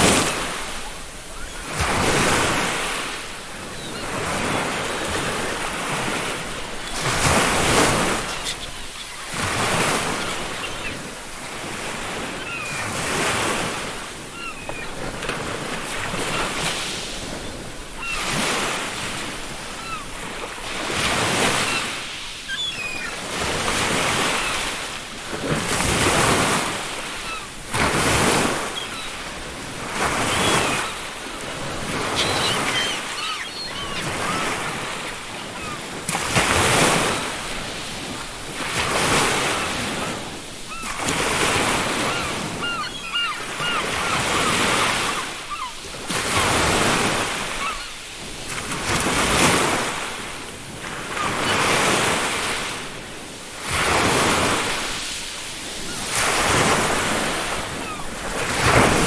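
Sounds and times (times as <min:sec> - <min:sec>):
faint seagull calls: 0:00.0 - 0:11.2, 0:12.1 - 0:15.1, 0:17.9 - 0:18.6, 0:19.7 - 0:24.8, 0:27.0 - 0:29.4, 0:30.0 - 0:35.9, 0:39.4 - 0:48.0
ocean waves breaking: 0:00.0 - 0:59.0.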